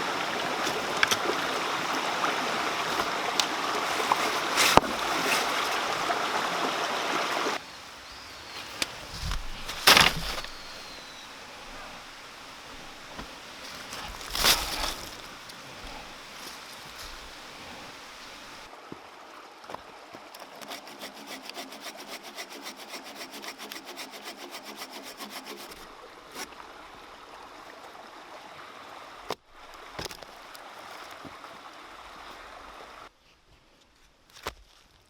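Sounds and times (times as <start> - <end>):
mountain stream running: 0.0 - 33.1
saw cutting wood: 8.4 - 18.7, 20.5 - 25.8.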